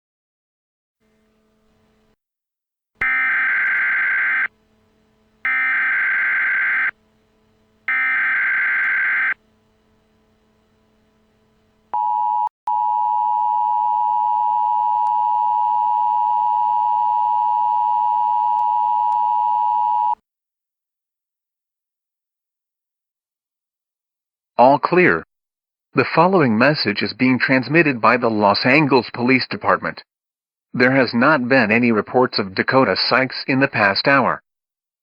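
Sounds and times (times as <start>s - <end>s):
two-tone alert signal: 3.0s - 4.5s, 5.5s - 7.0s, 7.9s - 9.4s
screechy digital bursts: 3.0s - 4.6s, 5.4s - 7.0s, 7.9s - 9.4s.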